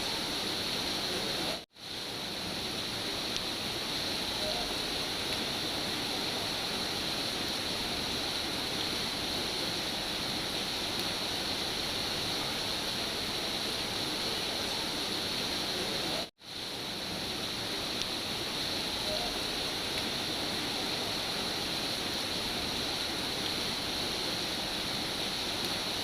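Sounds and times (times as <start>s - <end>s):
steady rain: 0.0s - 26.0s.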